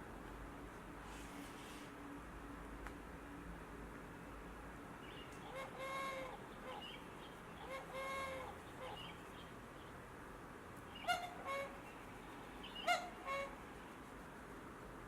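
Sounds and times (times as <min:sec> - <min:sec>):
bird-like calls from small speaker: 0:05.4 - 0:07.0, 0:07.6 - 0:09.2, 0:11.0 - 0:13.6.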